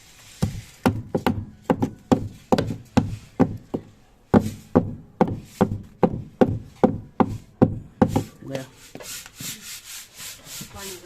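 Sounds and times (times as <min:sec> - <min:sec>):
sharp taps and knocks: 0:00.4 - 0:08.3.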